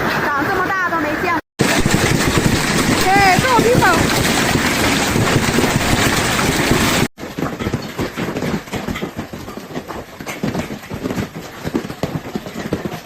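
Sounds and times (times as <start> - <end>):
storm wind and rain: 0.0 - 8.4
irregular clattering and knocking: 1.6 - 13.0.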